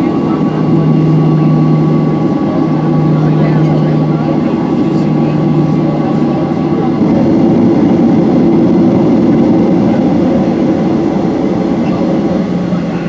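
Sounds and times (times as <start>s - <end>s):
airplane cabin rumble: 0.0s - 13.0s
low hum: 0.0s - 13.0s.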